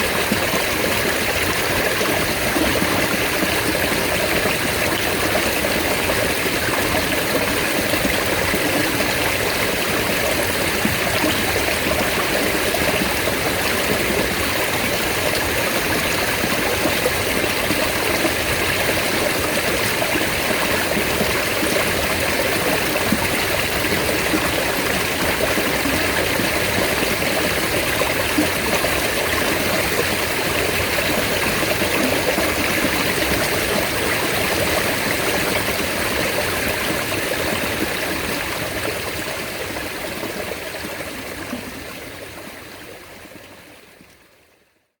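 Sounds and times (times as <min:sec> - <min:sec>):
stream water rushing: 0:00.0 - 0:43.4.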